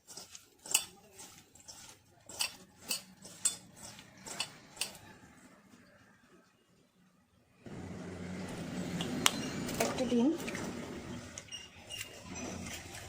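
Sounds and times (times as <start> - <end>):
utensil clinking against bowl: 0.1 - 5.0.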